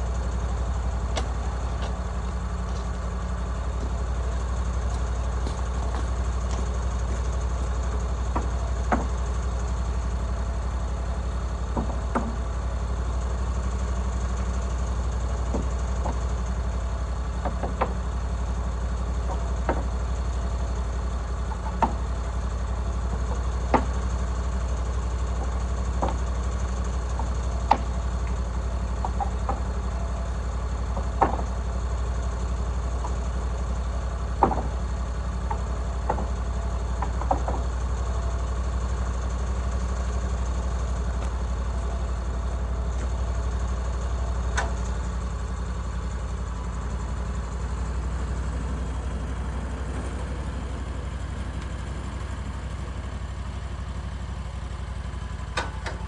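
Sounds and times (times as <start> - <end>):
small engine idling: 0.0 - 56.0
sharp knocks and clicks: 4.9 - 9.3, 11.8 - 12.4, 21.5 - 22.2, 23.1 - 33.5, 34.2 - 37.9, 44.5 - 44.9, 55.6 - 56.0.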